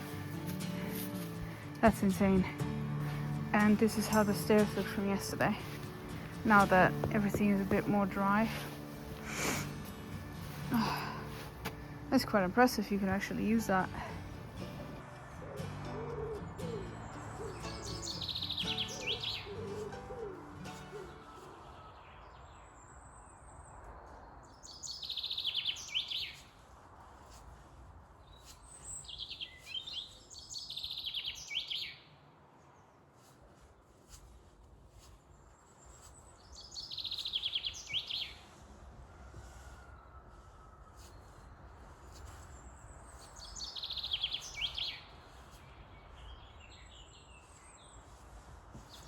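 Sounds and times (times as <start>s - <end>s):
background music: 0.0s - 21.9s
songbird singing high phrases: 16.5s - 23.8s, 24.6s - 26.4s, 28.3s - 32.1s, 36.4s - 38.4s, 42.7s - 48.1s.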